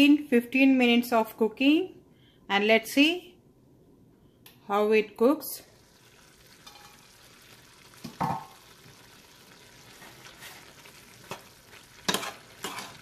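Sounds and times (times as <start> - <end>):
liver sizzling in a pan: 5.7 - 13.0.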